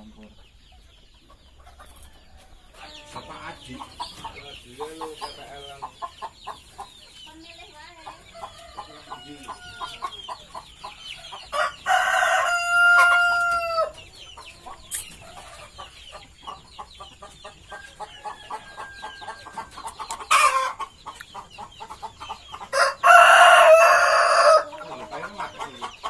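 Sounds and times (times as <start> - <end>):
hens clucking: 0.0 - 26.0
rooster crowing: 8.4 - 10.1, 11.5 - 14.0, 17.8 - 19.7, 22.7 - 25.3.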